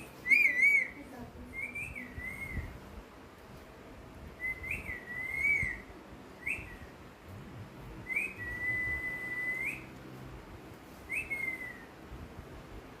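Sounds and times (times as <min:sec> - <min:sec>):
parrot whistling: 0:00.2 - 0:02.6, 0:04.4 - 0:06.9, 0:08.0 - 0:09.9, 0:11.1 - 0:11.9.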